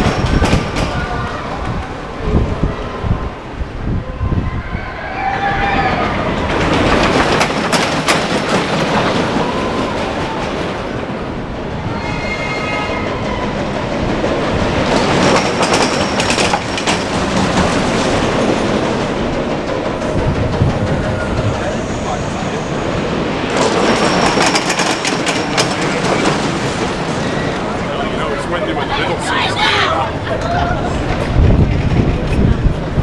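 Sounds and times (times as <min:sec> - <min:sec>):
ride train rattling on track: 0:00.0 - 0:33.0
pitched squeal: 0:11.8 - 0:13.6.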